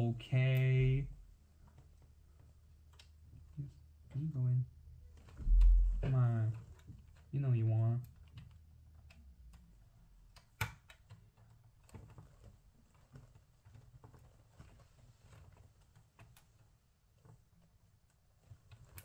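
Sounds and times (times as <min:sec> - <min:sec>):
small parts clicking and tapping: 0:05.2 - 0:19.0
low hum: 0:05.4 - 0:06.6.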